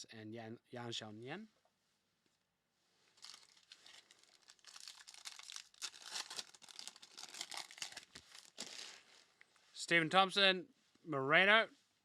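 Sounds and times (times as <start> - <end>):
wrapper being torn and crinkled: 3.1 - 9.4.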